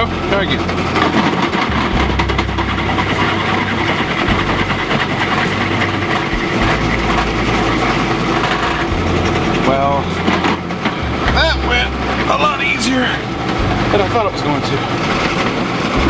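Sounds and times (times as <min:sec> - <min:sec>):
drill press drilling steel: 0:00.0 - 0:11.2.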